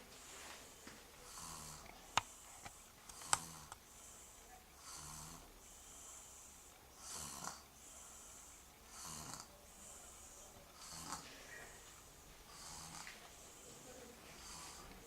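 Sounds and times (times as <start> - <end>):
breathy hiss: 0.0 - 15.0
person snoring: 1.2 - 1.9, 3.1 - 4.2, 4.8 - 11.8, 12.5 - 15.0.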